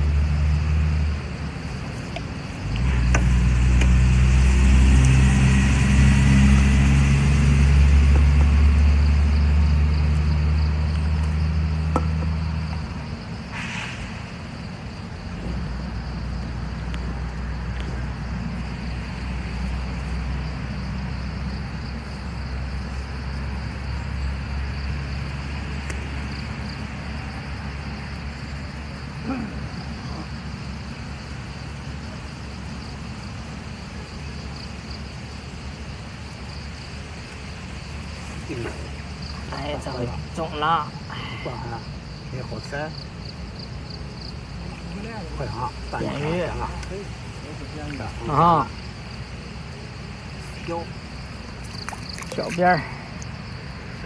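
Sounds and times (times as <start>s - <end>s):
engine running with low drone: 0.0s - 40.4s.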